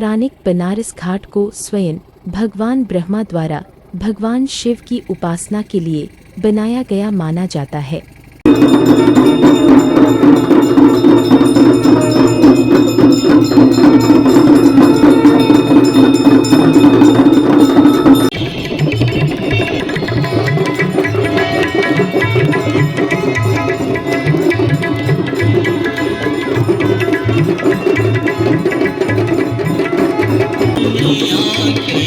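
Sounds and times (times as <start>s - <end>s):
cymbals clanging: 8.4s - 32.0s
drums: 8.4s - 32.0s
temple bells clanging: 8.4s - 32.0s.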